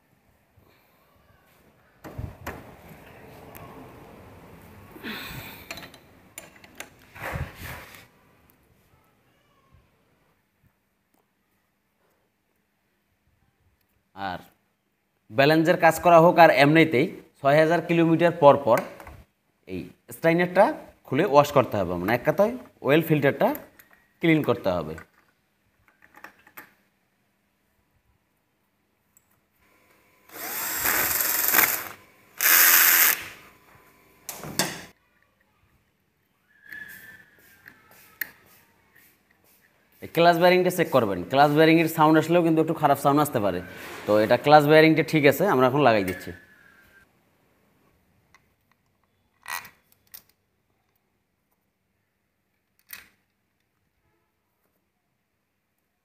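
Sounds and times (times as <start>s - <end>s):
power tool running: 30.3s - 33.5s.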